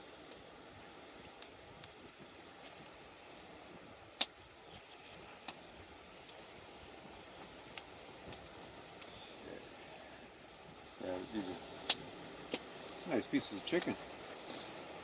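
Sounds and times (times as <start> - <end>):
wood fire crackling and popping: 3.8 - 5.6, 6.9 - 9.1.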